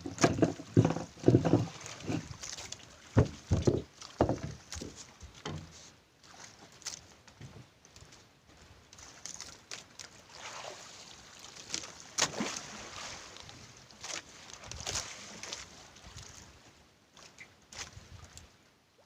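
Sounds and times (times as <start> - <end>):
water splashing: 0.0 - 7.1, 9.0 - 16.4.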